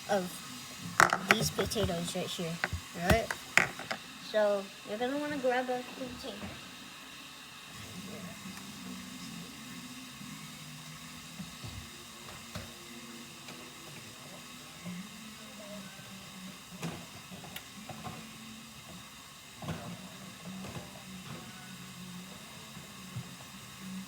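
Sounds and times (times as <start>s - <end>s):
butter sizzling in a pot: 0.0s - 24.0s
kitchen containers clattering: 1.0s - 4.0s.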